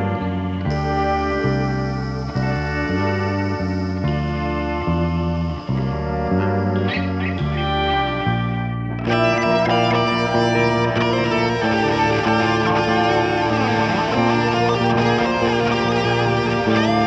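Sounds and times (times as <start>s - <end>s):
progressive rock music: 9.0s - 17.0s.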